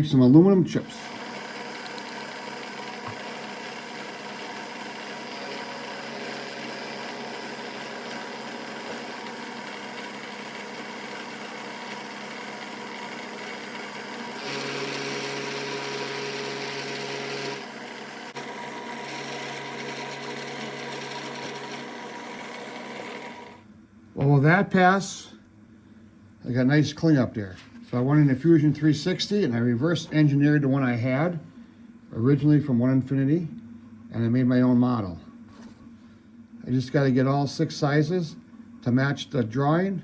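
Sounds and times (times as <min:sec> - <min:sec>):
milling machine whining: 0:00.7 - 0:23.6.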